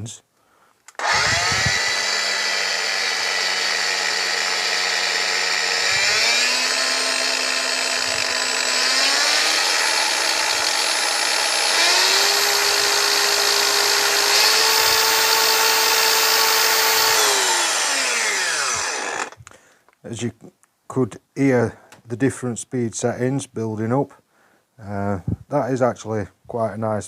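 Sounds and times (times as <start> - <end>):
angle grinder motor whine: 0.9 - 19.5.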